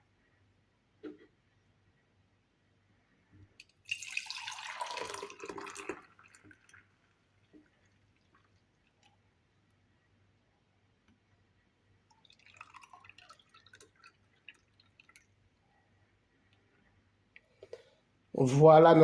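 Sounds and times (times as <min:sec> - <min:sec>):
juice pouring and splashing: 0:03.6 - 0:09.1, 0:12.1 - 0:15.4
small drips: 0:03.6 - 0:09.2, 0:12.1 - 0:15.4.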